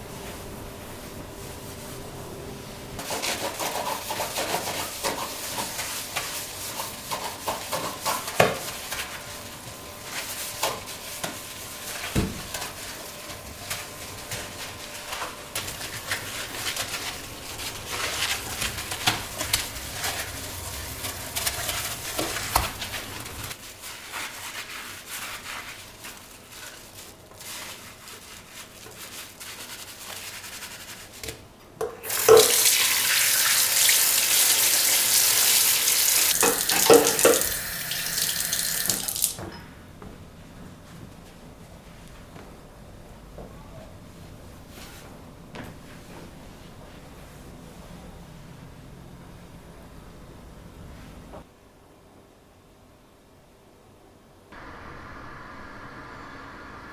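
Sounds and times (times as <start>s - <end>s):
rubbing and scraping: 3.0s - 9.2s.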